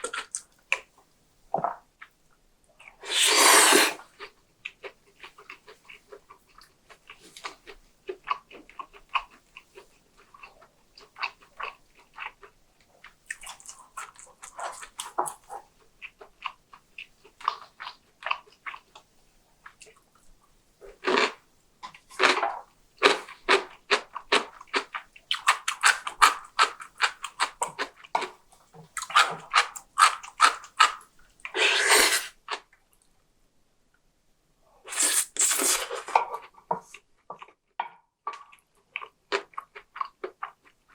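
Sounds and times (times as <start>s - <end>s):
person chewing: 2.8s - 18.8s, 29.0s - 32.6s, 34.9s - 37.6s, 38.3s - 40.9s.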